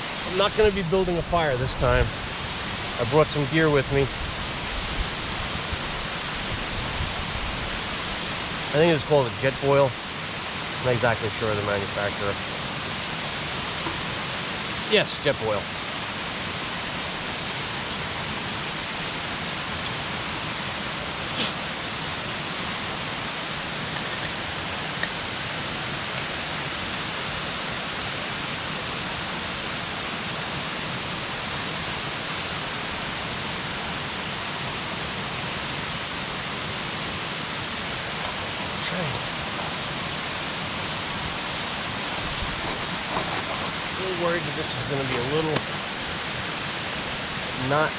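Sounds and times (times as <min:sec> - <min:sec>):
waterfall rushing: 0:00.0 - 0:47.9.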